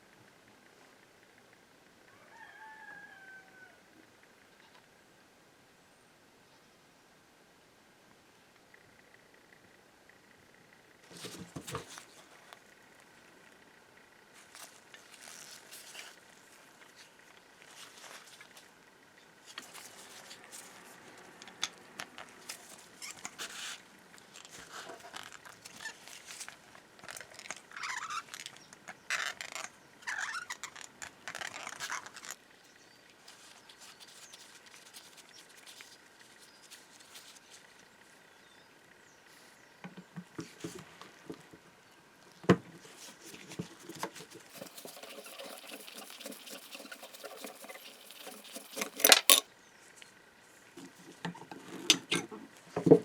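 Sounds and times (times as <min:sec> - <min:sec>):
scraping and rustling: 0:11.0 - 0:12.6, 0:14.4 - 0:18.8, 0:33.2 - 0:37.9, 0:42.8 - 0:49.5
metal parts clicking and tapping: 0:44.5 - 0:49.5.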